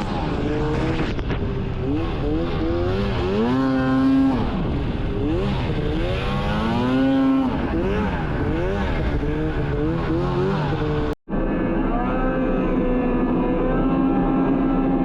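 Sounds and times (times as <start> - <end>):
snowmobile engine revving: 0.0 - 11.2.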